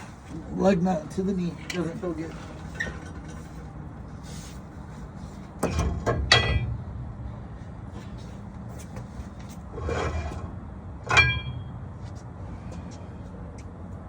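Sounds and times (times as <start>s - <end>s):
low steady rumble: 0.0s - 14.0s
metal clanks ringing: 5.6s - 6.8s, 11.0s - 11.9s.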